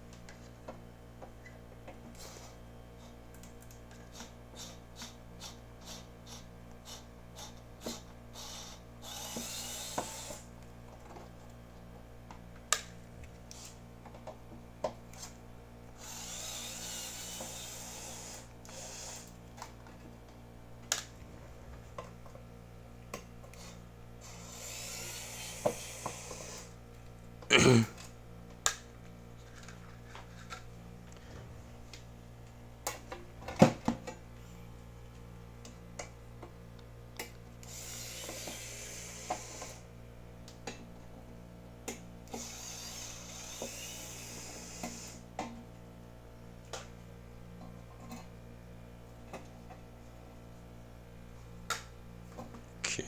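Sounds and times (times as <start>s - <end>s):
hiss-like whirring: 24.3s - 26.7s.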